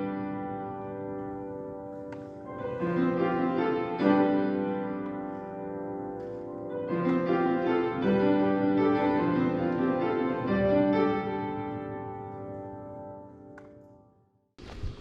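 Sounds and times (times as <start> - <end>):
slow piano melody: 0.0 - 14.2.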